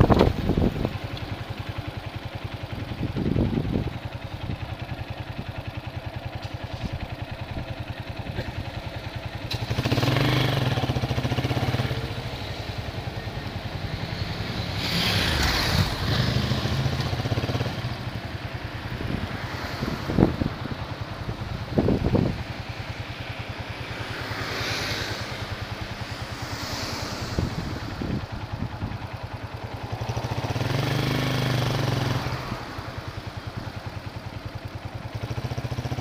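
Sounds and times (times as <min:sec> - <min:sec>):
vehicle engine running: 0:00.0 - 0:36.0
wind hiss: 0:09.5 - 0:34.2.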